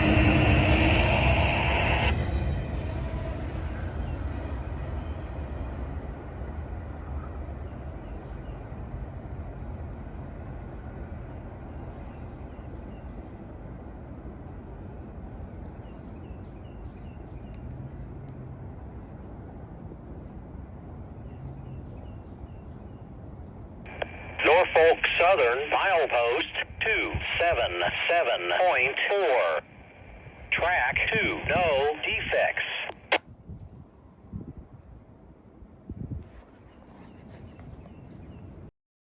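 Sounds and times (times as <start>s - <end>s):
freight train rumbling: 0.0s - 24.7s
low wind noise: 0.0s - 38.7s.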